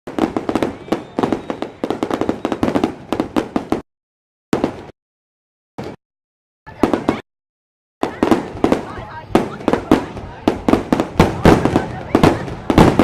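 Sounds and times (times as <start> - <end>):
fireworks bangs and crackles: 0.1 - 3.9, 4.5 - 5.0, 5.8 - 6.0, 6.7 - 7.2, 8.0 - 13.0.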